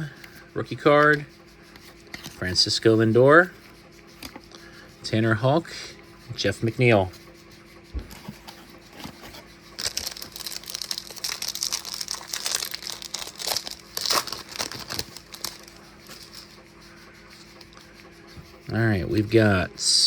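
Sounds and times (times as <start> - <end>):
foil wrapper crinkling and tearing: 9.8 - 16.4.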